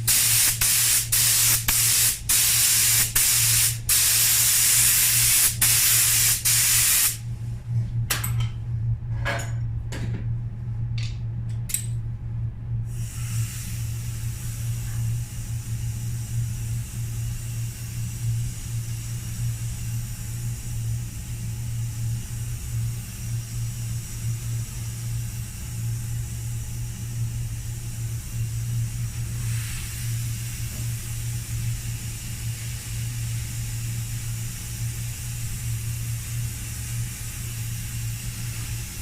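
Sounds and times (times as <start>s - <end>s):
paint spray gun hissing: 0.0s - 7.2s, 29.2s - 31.3s
constant low hum: 0.0s - 39.0s.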